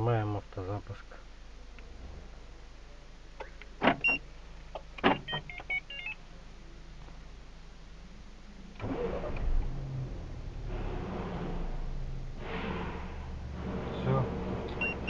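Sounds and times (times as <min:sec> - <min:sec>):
car engine starting and idling: 0:03.6 - 0:06.1, 0:08.5 - 0:15.0
car alarm clicks: 0:03.8 - 0:04.2, 0:05.0 - 0:06.2
short electronic beeps: 0:14.8 - 0:15.0.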